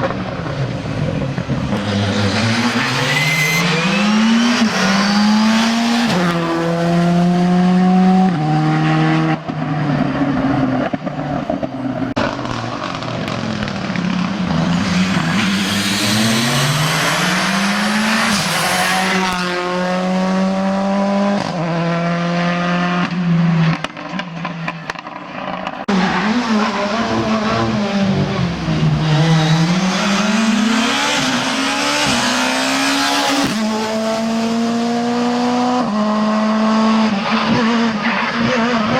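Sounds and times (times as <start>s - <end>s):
rally car engines revving: 0.0s - 38.9s
tyre squeal: 1.7s - 6.3s.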